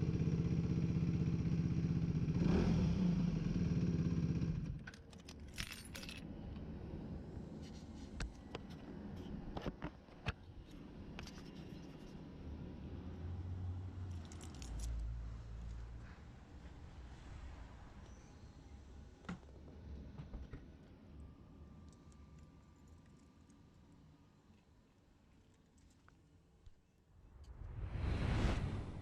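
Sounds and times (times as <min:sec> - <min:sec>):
motorcycle engine idling: 0:00.0 - 0:04.8
light metallic clicks and jingles: 0:04.9 - 0:06.3.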